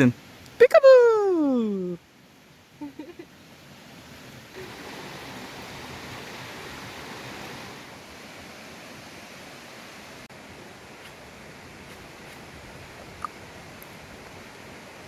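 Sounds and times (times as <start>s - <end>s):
stream water rushing: 2.1s - 15.0s.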